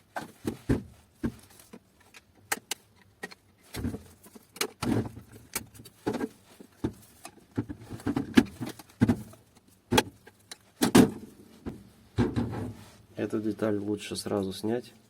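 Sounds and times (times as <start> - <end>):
plastic parts clicking and knocking: 0.0 - 11.2.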